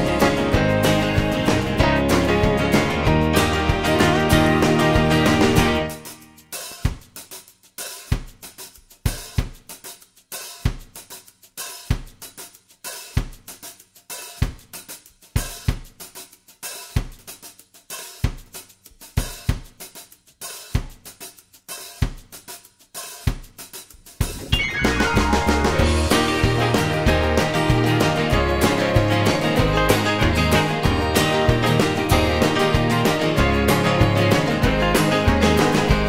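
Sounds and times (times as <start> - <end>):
hi-hat and cymbal ticks: 6.0 - 24.4
kick and snare drum beat: 6.6 - 36.0.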